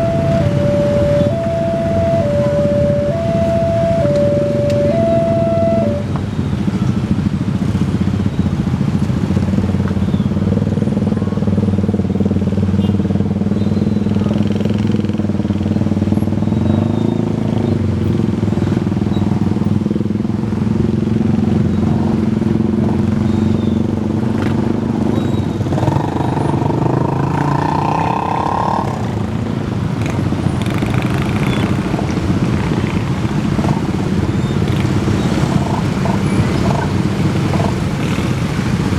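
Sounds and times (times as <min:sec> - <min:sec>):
level crossing alarm siren: 0:00.0 - 0:06.3
vehicle engines running: 0:00.0 - 0:38.9.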